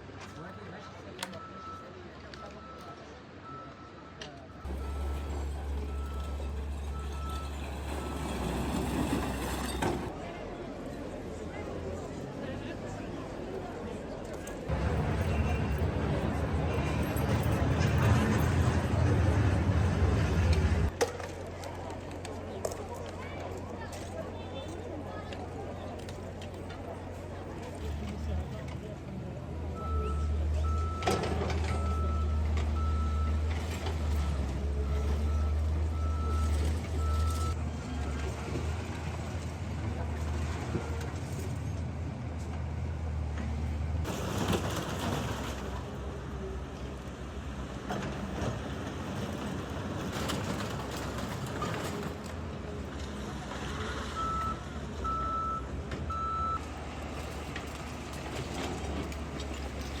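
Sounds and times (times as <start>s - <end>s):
diesel engine rumbling: 0.0s - 60.0s
reversing alarm beeping: 0.3s - 8.8s, 29.8s - 37.6s.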